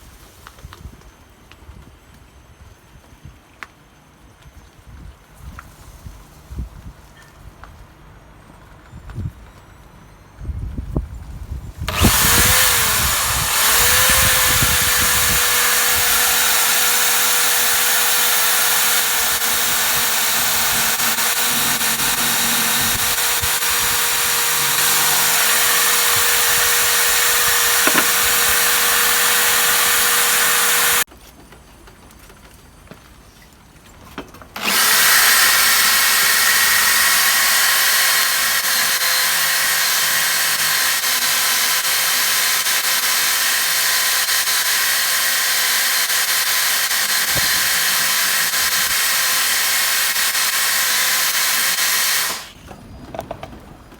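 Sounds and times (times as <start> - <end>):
power tool scrubbing rust: 11.9 - 31.1, 34.6 - 52.6.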